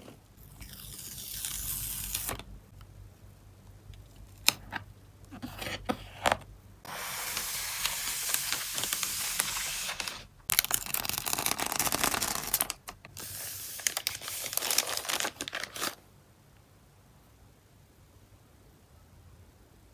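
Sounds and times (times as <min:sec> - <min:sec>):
plastic packing crinkling: 0:06.9 - 0:16.0.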